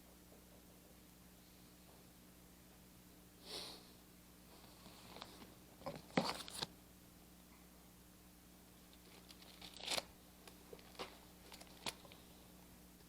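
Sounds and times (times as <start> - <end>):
paper pages rustling: 5.0 - 6.7, 9.0 - 10.1, 10.7 - 12.3.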